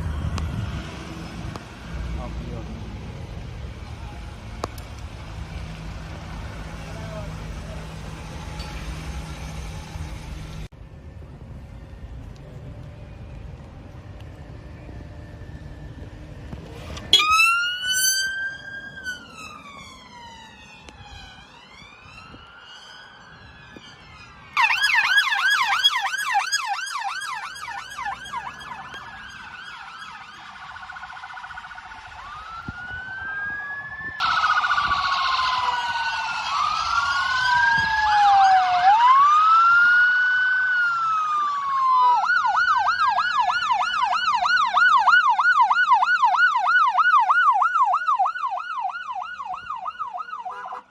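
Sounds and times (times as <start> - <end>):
siren wailing: 14.5 - 50.9
siren fast yelp: 17.1 - 50.9.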